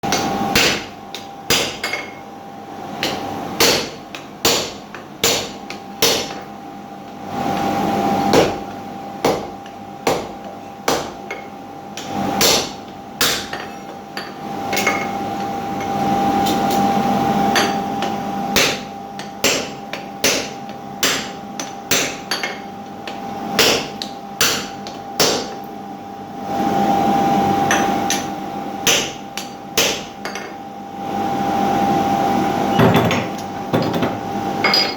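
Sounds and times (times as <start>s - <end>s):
hammer striking steel on anvil: 0.1s - 2.2s, 3.0s - 6.4s, 9.2s - 15.2s, 17.5s - 22.7s, 23.6s - 25.6s, 27.7s - 30.5s.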